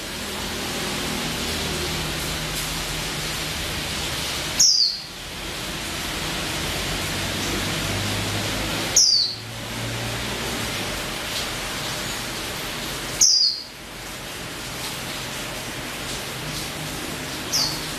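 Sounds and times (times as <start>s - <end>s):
bird high calls: 13.2s - 13.7s.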